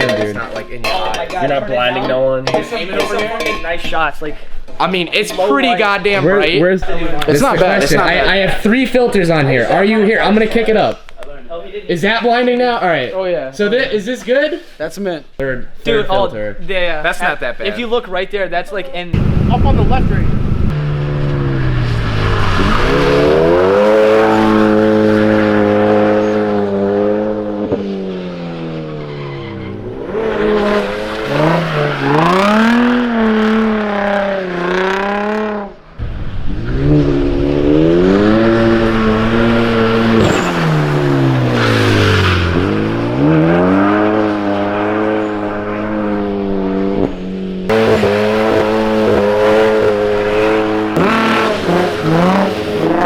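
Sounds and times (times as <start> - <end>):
tires skidding: 19.1 - 53.0
car engine revving hard: 19.2 - 53.0.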